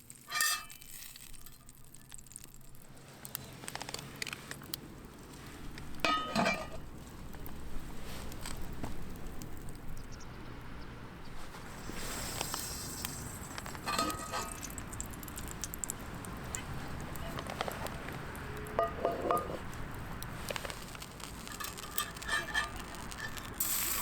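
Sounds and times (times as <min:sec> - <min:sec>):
metal utensils clinking on griddle: 0:00.0 - 0:02.5, 0:05.9 - 0:07.2, 0:11.9 - 0:24.0
small clicks and crackles: 0:00.0 - 0:24.0.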